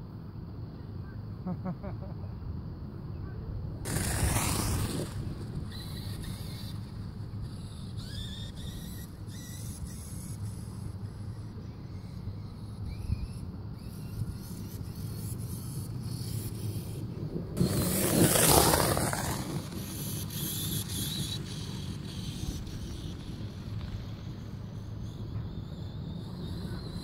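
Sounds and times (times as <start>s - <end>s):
rc truck motor running: 3.8s - 27.0s
rushing noise: 3.9s - 6.8s.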